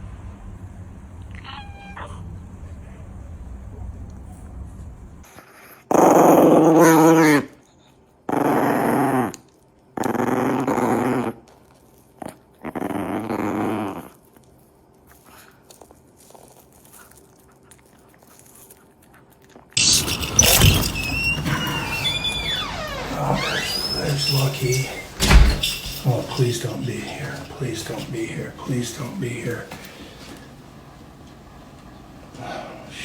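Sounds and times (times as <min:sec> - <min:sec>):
dog growling: 0:08.3 - 0:09.4, 0:10.0 - 0:11.4, 0:12.2 - 0:14.2
high gliding squeaks: 0:19.8 - 0:30.3.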